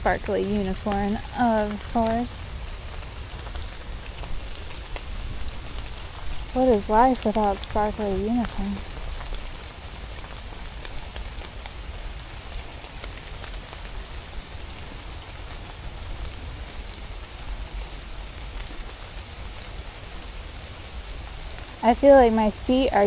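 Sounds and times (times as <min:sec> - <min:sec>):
rain hissing: 0:00.0 - 0:23.0
raindrops ticking: 0:00.0 - 0:23.0.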